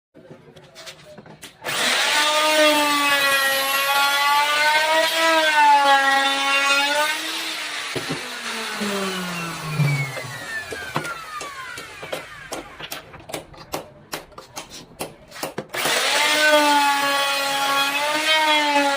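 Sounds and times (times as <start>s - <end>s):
power tool motor cutting wood: 1.6s - 13.0s, 15.7s - 18.9s.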